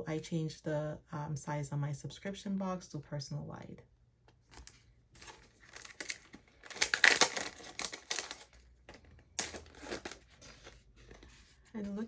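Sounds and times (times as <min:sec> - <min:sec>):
packaging crinkling and rustling: 0:04.4 - 0:11.3.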